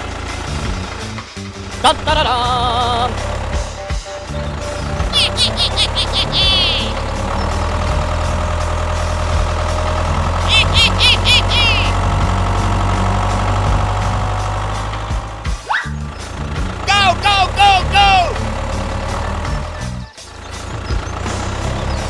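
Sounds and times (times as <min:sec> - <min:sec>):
engine running with deep hum: 0:00.0 - 0:22.0
rapid high chirping: 0:04.7 - 0:09.0, 0:10.4 - 0:12.2.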